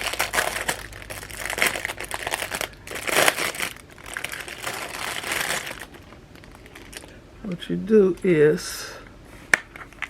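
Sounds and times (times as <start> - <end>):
packaging rustling and crackling: 0.0 - 7.2.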